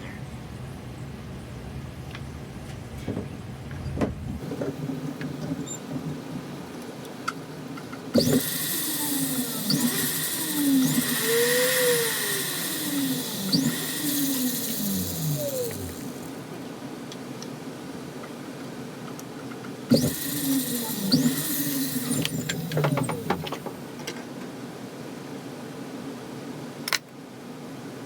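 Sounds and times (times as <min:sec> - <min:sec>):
small rotary drill drilling metal: 0:08.1 - 0:16.4, 0:19.9 - 0:23.8.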